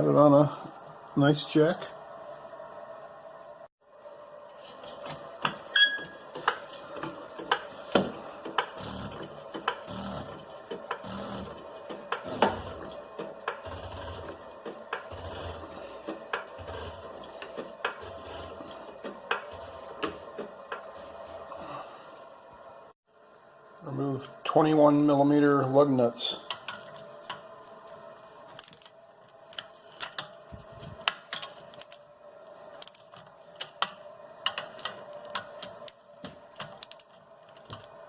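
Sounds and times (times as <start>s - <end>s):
floor jack clicking and thumping: 6.3s - 11.0s.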